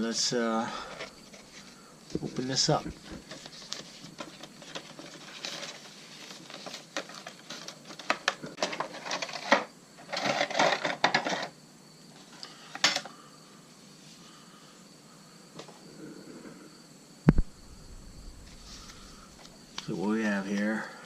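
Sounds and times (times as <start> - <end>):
packaging clicks and rustles: 2.2 - 11.3.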